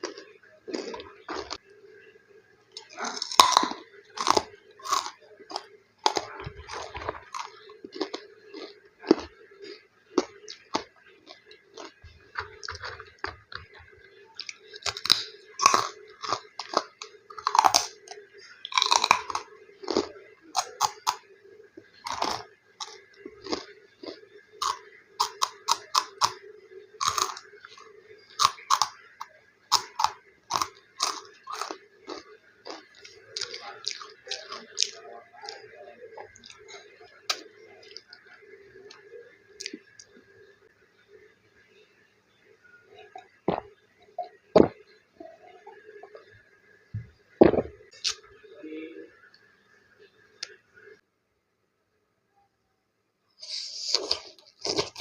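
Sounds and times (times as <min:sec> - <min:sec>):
crunching crispy snacks: 0:00.0 - 0:01.6, 0:02.8 - 0:21.3, 0:21.9 - 0:38.2, 0:53.4 - 0:55.0.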